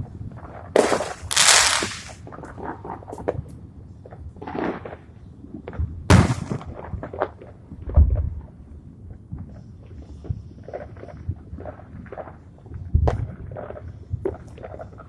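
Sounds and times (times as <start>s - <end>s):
fireworks crackling pops: 0.8s - 2.2s.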